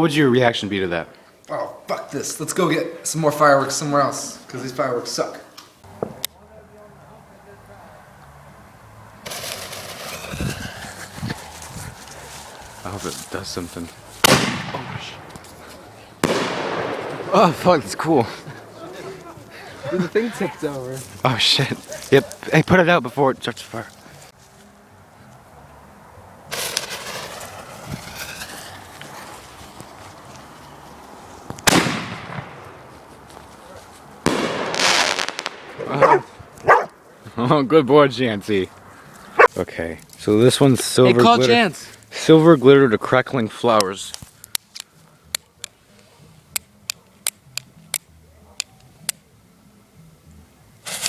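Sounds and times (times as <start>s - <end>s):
firework bang: 9.2s - 10.7s, 14.2s - 15.4s, 16.2s - 17.8s, 26.5s - 28.6s, 31.6s - 32.6s, 34.2s - 35.8s
firework hiss: 9.2s - 13.2s, 26.5s - 29.8s, 34.2s - 35.8s.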